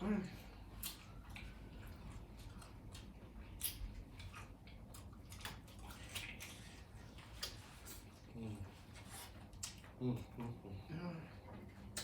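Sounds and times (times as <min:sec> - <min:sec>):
chewing crispy fried food: 0:00.0 - 0:12.0.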